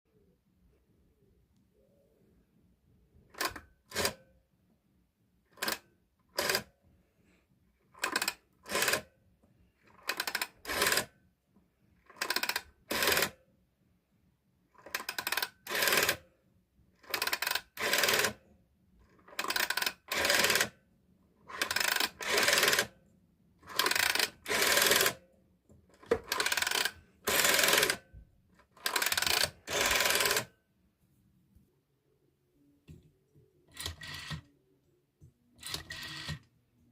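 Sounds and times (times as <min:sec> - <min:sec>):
rotary telephone dial whirring: 0:03.3 - 0:04.2, 0:05.5 - 0:06.7, 0:07.9 - 0:09.1, 0:09.8 - 0:11.2, 0:12.0 - 0:13.4, 0:14.8 - 0:16.3, 0:17.0 - 0:18.4, 0:19.0 - 0:20.8, 0:21.4 - 0:23.0, 0:23.6 - 0:25.2, 0:25.9 - 0:30.5, 0:33.7 - 0:34.5, 0:35.6 - 0:36.6.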